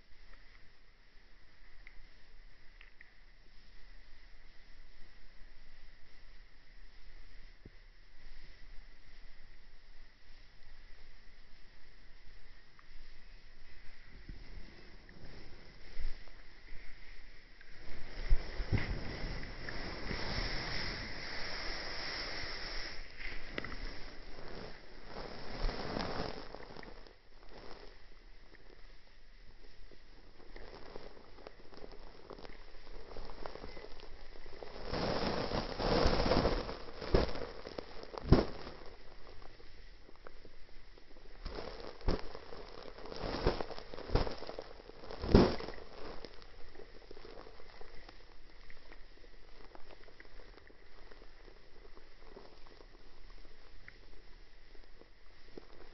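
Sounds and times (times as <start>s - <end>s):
faint clicks: 1.6s - 3.5s.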